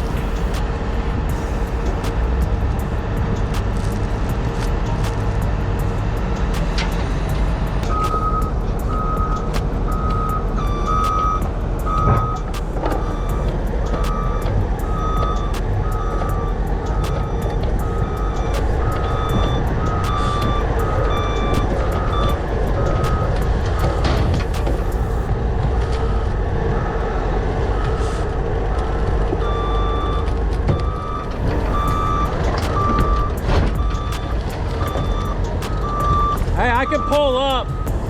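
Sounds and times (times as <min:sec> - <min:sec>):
heavy vehicle engines rumbling: 0:00.0 - 0:38.0
reversing alarm beeping: 0:07.9 - 0:25.3, 0:27.8 - 0:38.0.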